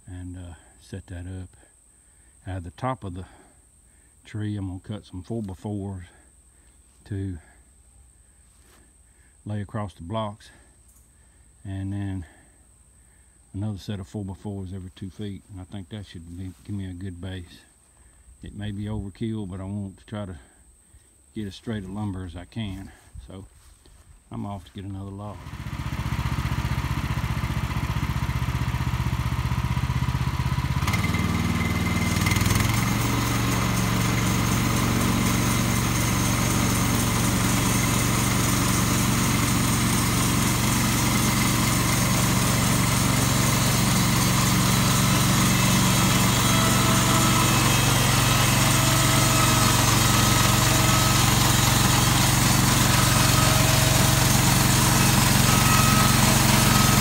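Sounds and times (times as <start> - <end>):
engine running: 24.8 - 57.0.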